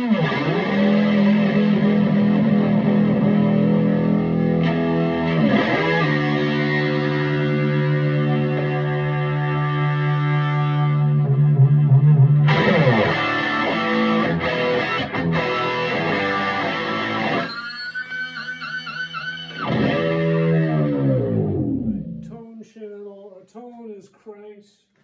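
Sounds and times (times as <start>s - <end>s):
electric guitar through amplifier: 0.0s - 22.3s.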